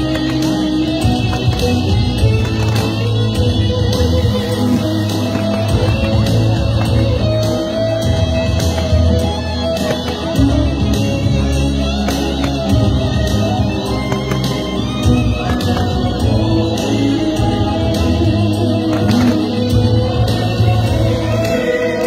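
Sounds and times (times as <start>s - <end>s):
amplified music with guitar and bass: 0.0s - 22.0s.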